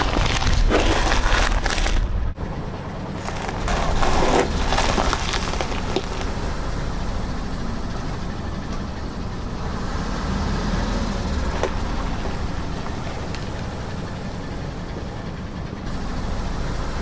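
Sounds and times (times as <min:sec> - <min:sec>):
car engine low rumble: 0:00.0 - 0:17.0
sharp crack: 0:03.2 - 0:06.4.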